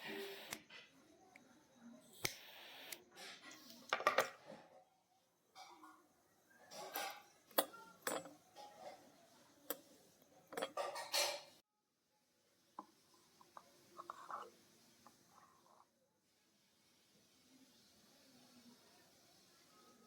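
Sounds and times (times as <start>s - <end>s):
kitchen utensils clinking: 3.2s - 4.8s, 5.6s - 11.6s, 13.9s - 14.6s.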